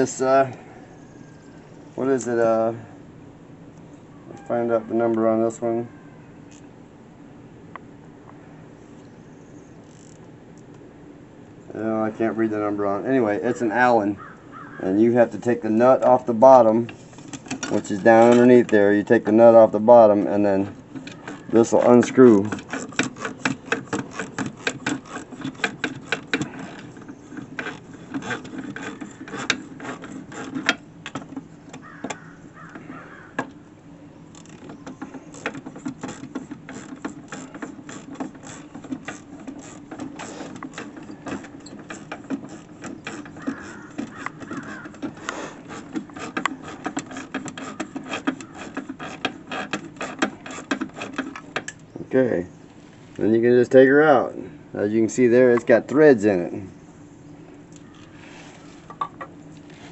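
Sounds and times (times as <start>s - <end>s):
hand tool clicking rapidly: 21.0s - 31.2s, 34.9s - 51.4s.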